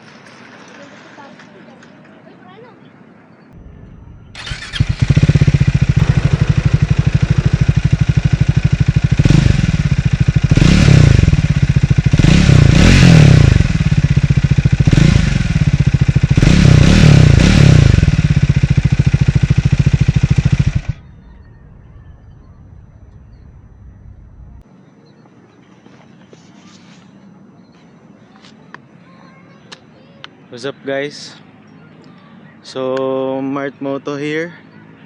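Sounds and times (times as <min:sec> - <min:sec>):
engine revving blips: 0:03.6 - 0:24.6
motorcycle engine idling: 0:03.6 - 0:24.7.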